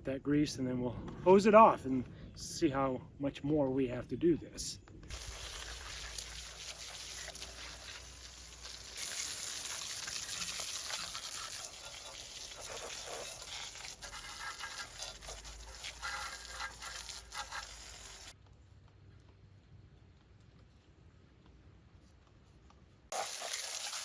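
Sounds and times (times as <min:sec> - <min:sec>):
water pattering on metal: 0:05.1 - 0:18.3
hose spraying water: 0:05.1 - 0:18.4, 0:23.1 - 0:24.0.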